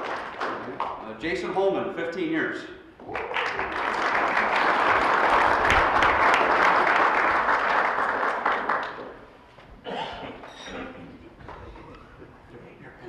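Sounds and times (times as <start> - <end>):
audience applauding: 0.0 - 1.0, 3.0 - 9.4.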